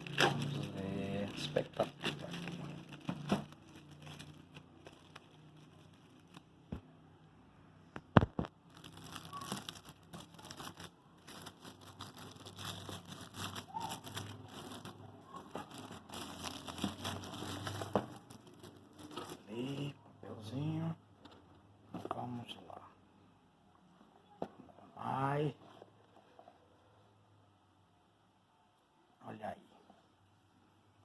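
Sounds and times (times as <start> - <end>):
paper wrapping crinkling: 0.0 - 6.8, 8.2 - 19.9.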